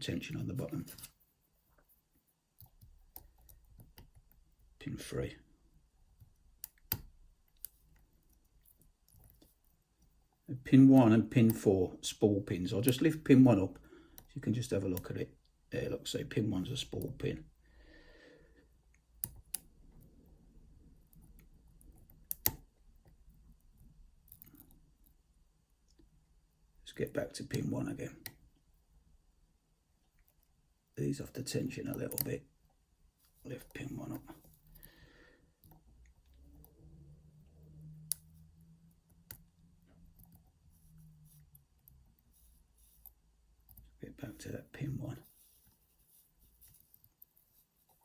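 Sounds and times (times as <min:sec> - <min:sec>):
lock pick scraping ticks: 0:21.2 - 0:22.6.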